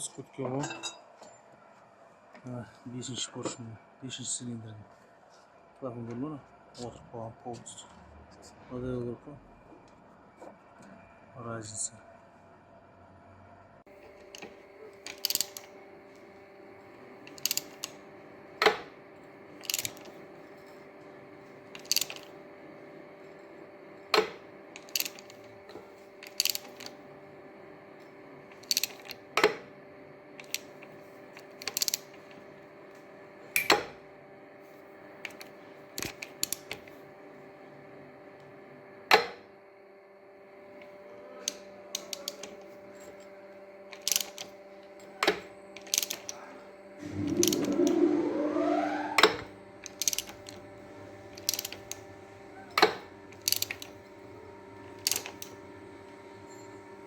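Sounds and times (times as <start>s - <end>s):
diesel engine hum: 47.0s - 49.6s.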